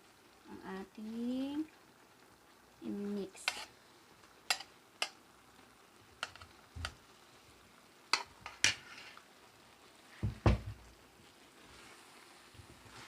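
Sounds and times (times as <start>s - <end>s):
utensil clanking against a pan: 4.5s - 5.2s.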